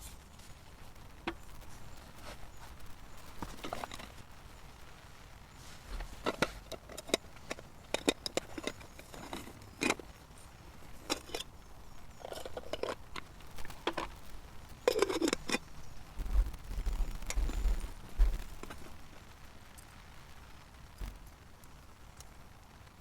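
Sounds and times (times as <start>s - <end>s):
cooking gear clattering: 2.2s - 4.2s, 5.9s - 10.1s, 11.0s - 15.7s.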